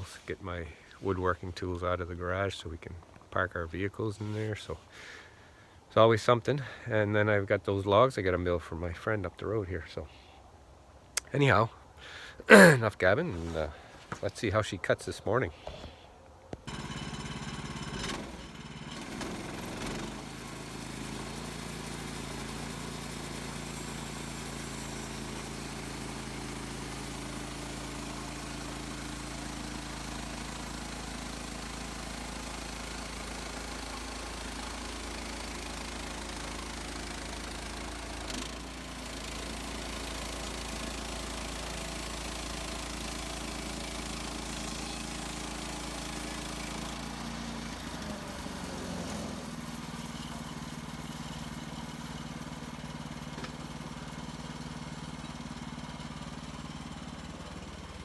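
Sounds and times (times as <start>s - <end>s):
gas engine running: 16.7s - 58.0s.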